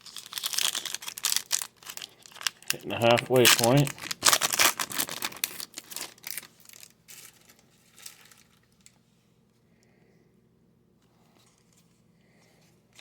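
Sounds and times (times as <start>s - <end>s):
foil wrapper tearing and crinkling: 0.0s - 8.9s.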